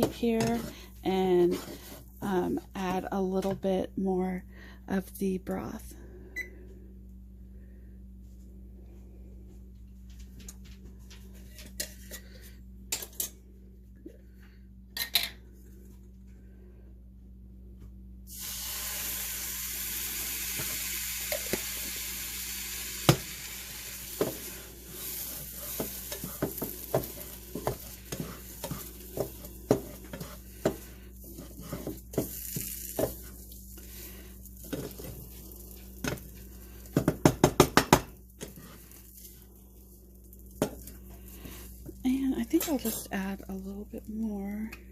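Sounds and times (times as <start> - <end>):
utensil stirring in a pan: 0.0 - 2.3, 18.4 - 44.3
sizzling hiss: 18.3 - 37.0.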